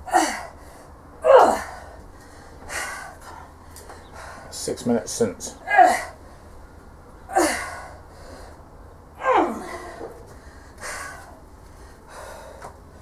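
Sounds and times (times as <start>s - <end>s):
woman grunting and straining: 0.0s - 0.6s, 1.2s - 2.0s, 5.6s - 6.2s, 7.3s - 8.0s, 9.2s - 10.2s.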